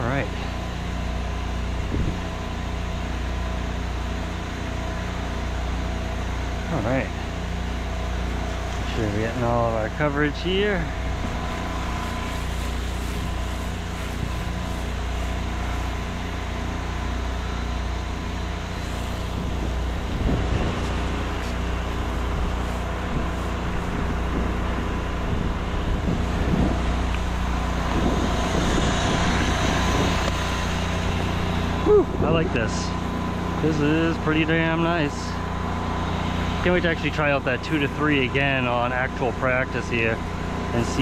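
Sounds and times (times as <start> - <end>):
pump motor running: 0.0 - 41.0
spray gun hissing: 11.0 - 16.8, 18.6 - 24.5.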